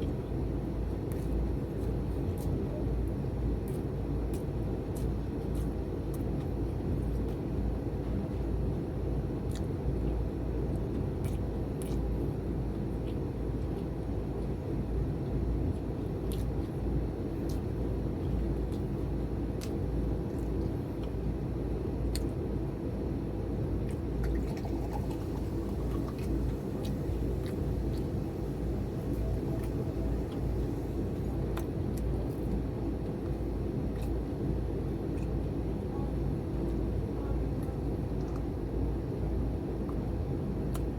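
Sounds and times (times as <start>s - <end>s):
low rumbling background noise: 0.0s - 40.9s
chewing crispy food: 0.8s - 8.5s, 9.4s - 22.5s, 23.8s - 34.5s.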